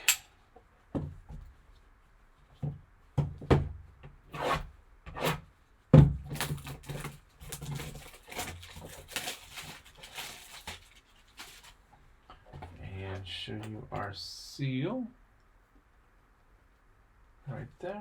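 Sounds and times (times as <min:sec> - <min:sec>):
rubbing and scraping packaging: 0:06.2 - 0:11.9.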